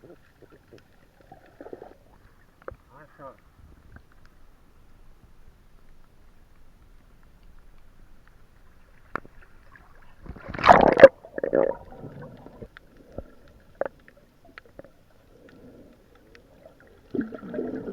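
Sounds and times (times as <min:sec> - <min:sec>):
water gurgling and sloshing: 0:00.0 - 0:02.9, 0:07.8 - 0:17.9
water burst: 0:10.2 - 0:14.0, 0:16.6 - 0:17.9.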